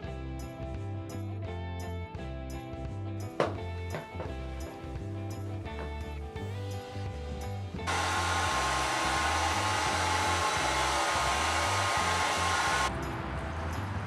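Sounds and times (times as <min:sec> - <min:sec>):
background music with bass: 0:00.0 - 0:14.0
loud rushing air noise: 0:07.9 - 0:12.9.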